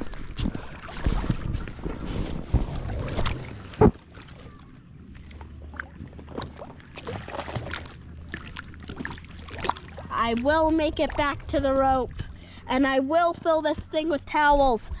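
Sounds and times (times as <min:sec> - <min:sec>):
water sloshing and splashing: 0:00.0 - 0:15.0
wind buffeting microphone: 0:13.3 - 0:15.0.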